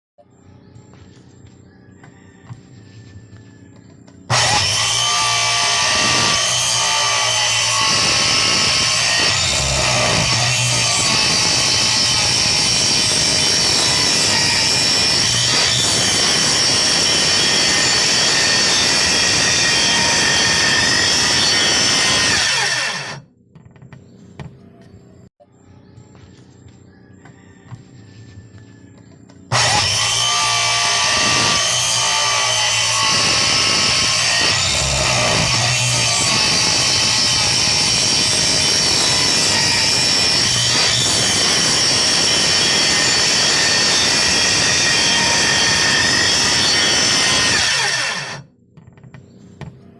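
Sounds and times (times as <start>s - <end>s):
power tool high whine: 4.3s - 23.2s, 29.5s - 48.5s.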